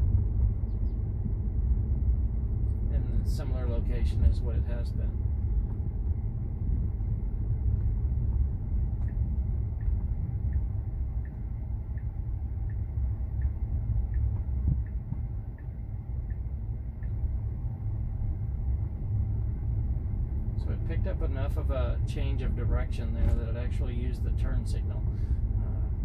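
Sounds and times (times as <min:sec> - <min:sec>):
road and tyre rumble in car: 0:00.0 - 0:26.0
turn signal ticking: 0:05.1 - 0:26.0.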